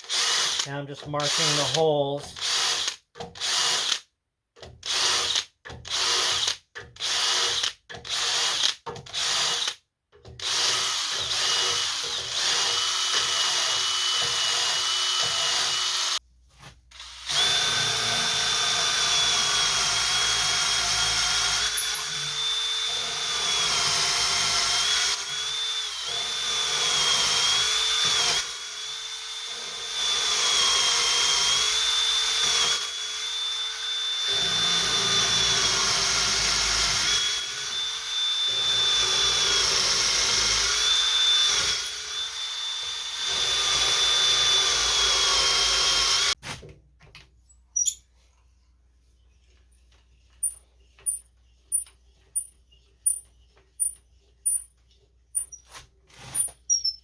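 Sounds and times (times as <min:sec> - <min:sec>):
electric drill whining: 0:10.4 - 0:16.2, 0:16.9 - 0:46.4.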